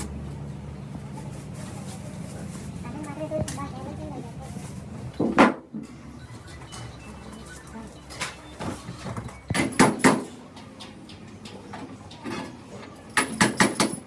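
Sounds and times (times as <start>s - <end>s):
sharp knocks: 9.5s - 10.3s.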